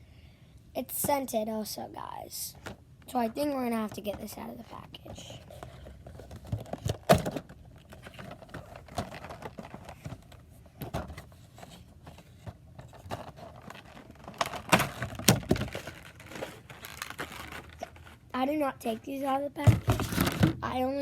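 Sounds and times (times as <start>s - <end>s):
packaging rustling: 3.8s - 18.3s, 19.6s - 20.6s.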